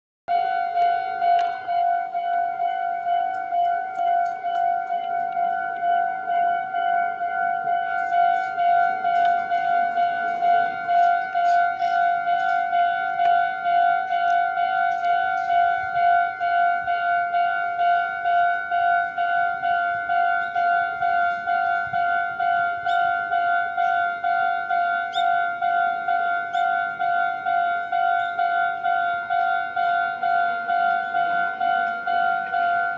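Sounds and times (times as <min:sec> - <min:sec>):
railroad crossing alarm bell: 0:00.3 - 0:32.9.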